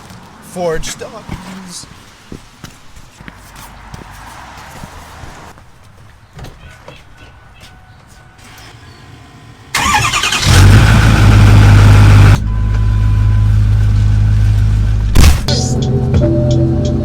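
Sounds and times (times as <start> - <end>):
diesel truck engine starting: 8.4 - 17.0.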